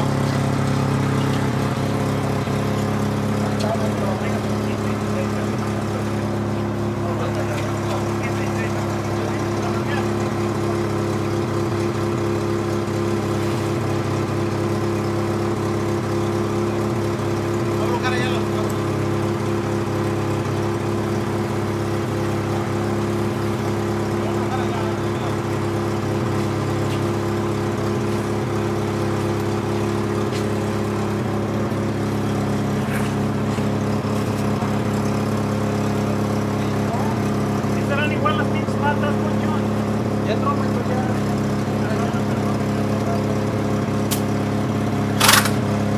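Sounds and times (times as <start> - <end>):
engine running steadily: 0.0 - 45.9.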